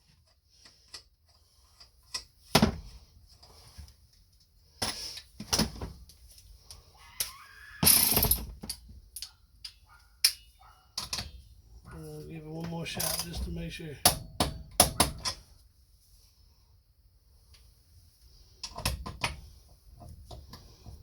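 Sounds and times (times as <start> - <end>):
metal parts clunking and knocking: 7.8 - 11.5, 12.9 - 15.4.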